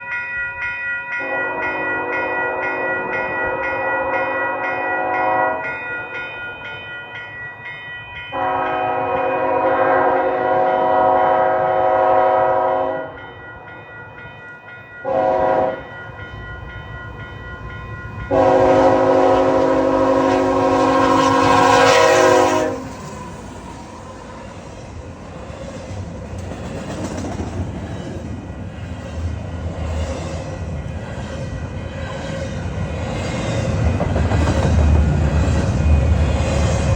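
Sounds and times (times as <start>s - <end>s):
locomotive air horn blasts: 1.2s - 2.9s, 3.5s - 5.7s, 8.3s - 13.2s, 15.0s - 15.8s, 18.3s - 23.1s
train rumble passing: 1.2s - 36.9s.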